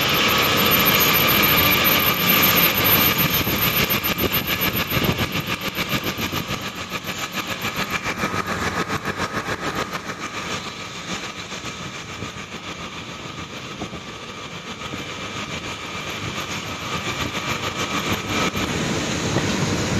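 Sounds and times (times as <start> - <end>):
power drill with hole saw cutting: 0.0 - 6.0.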